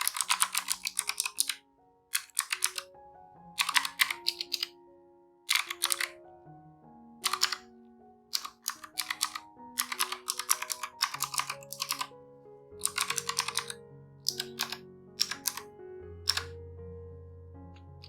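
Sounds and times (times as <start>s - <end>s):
keyboard typing: 0.0s - 2.9s, 3.6s - 4.8s, 5.5s - 6.2s, 7.2s - 7.7s, 8.3s - 12.1s, 12.8s - 15.7s, 16.3s - 16.6s
background music: 0.0s - 18.0s.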